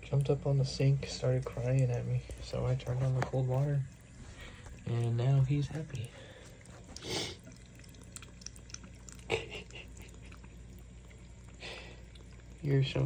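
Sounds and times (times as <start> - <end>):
cat drinking: 0.0 - 13.0
water running from tap: 0.0 - 13.0.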